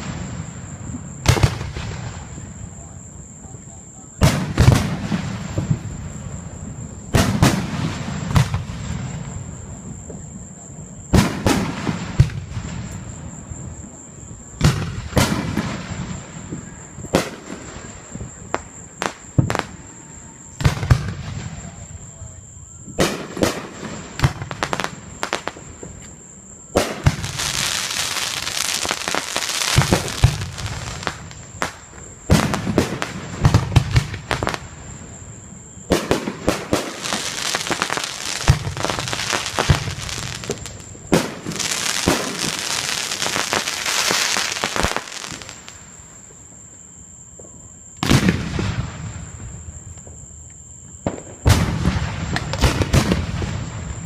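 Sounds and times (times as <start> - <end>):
firework crackling: 0.0 - 2.7, 11.0 - 14.0, 22.8 - 46.3, 51.0 - 54.0
firework shells bursting: 26.7 - 34.8, 35.9 - 45.8.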